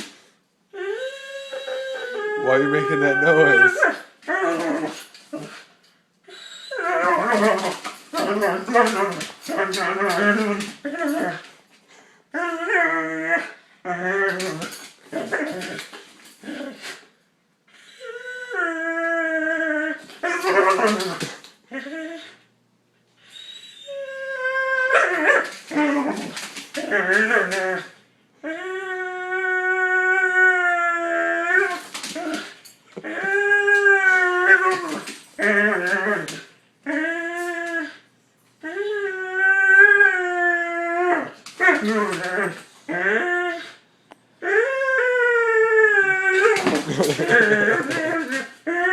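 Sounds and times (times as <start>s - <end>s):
dog whining and grumbling: 0.0s - 11.6s, 12.3s - 22.5s, 23.2s - 43.8s, 44.4s - 48.9s.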